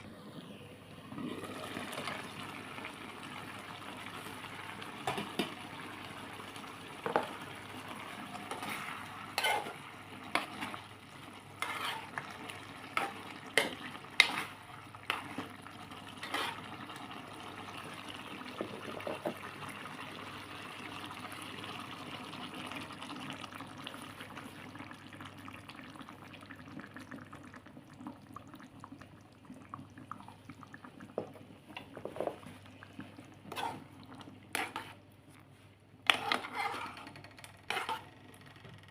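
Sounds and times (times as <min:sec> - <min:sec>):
food sizzling and bubbling in pan: 0:01.0 - 0:38.5
utensil clacking and scraping pan: 0:08.4 - 0:10.8, 0:11.6 - 0:12.3, 0:12.9 - 0:15.4, 0:16.2 - 0:16.6, 0:33.5 - 0:33.9, 0:34.5 - 0:35.0, 0:36.0 - 0:38.1.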